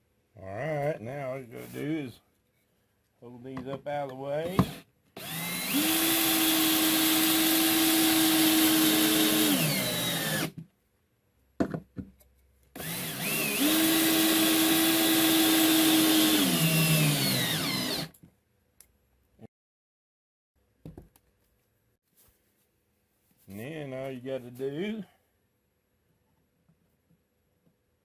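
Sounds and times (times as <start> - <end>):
power drill driving screws: 4.5 - 10.6, 12.8 - 18.1.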